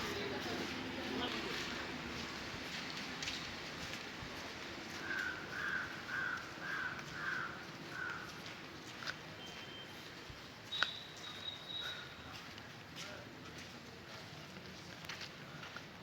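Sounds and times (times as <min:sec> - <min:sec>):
outdoor background noise: 0:00.0 - 0:16.0
thin high whistle-like tone: 0:10.7 - 0:12.0.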